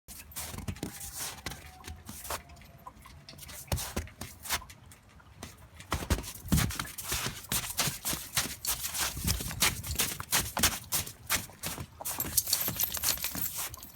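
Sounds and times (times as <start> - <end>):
footsteps crunching in snow: 5.9 - 13.9.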